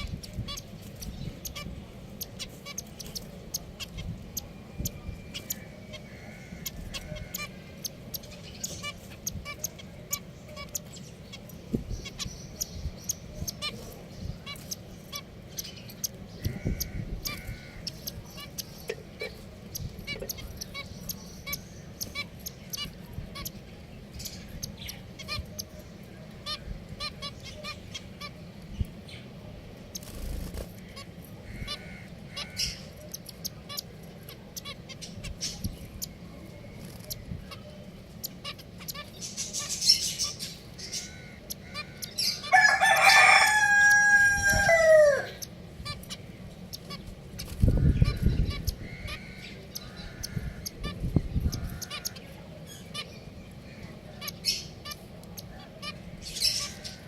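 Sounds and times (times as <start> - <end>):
finches chirping: 0.0 - 57.0
rooster crowing: 42.4 - 45.4.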